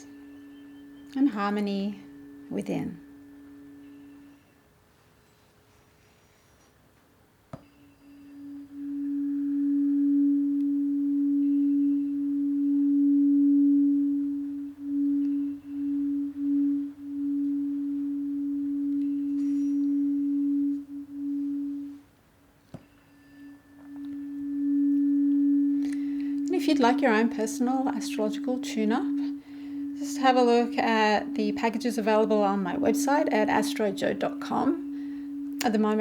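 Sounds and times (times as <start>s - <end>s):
tuning fork ringing: 0.0s - 5.4s, 7.6s - 36.0s
tuning fork strike click: 7.6s - 22.0s, 22.8s - 36.0s.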